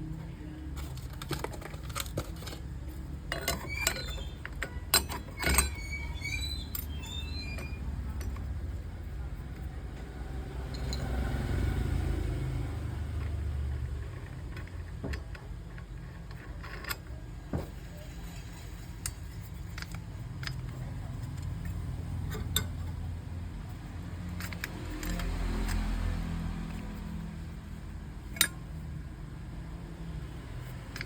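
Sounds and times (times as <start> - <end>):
light clicks and clinks: 9.4 - 11.4.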